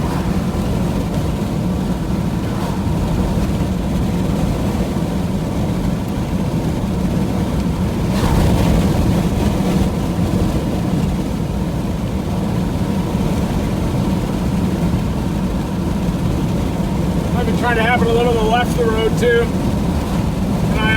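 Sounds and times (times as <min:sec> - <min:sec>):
whoosh: 0:00.0 - 0:04.0
vehicle road and engine noise: 0:00.0 - 0:20.9.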